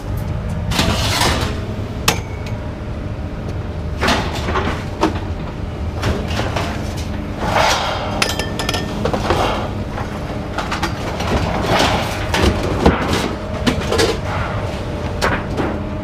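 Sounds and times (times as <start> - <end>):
metal clanking and knocking: 8.1 - 14.2.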